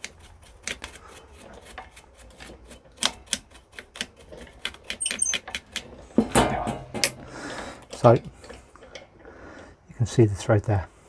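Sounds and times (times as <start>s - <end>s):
brush clicking on metal: 0.0s - 5.8s
high squeaks: 4.9s - 5.5s.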